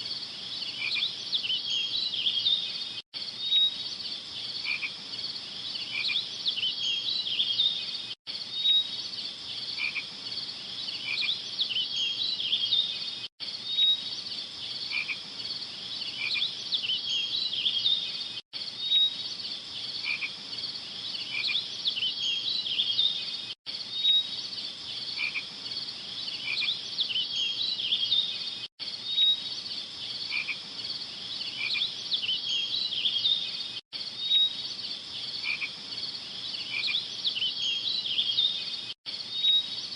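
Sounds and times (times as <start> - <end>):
frogs calling: 0.0 - 2.8, 3.4 - 7.9, 9.5 - 13.1, 14.7 - 18.2, 19.9 - 23.2, 24.0 - 28.4, 29.0 - 33.6, 35.2 - 38.7
insects chirping: 0.0 - 39.9.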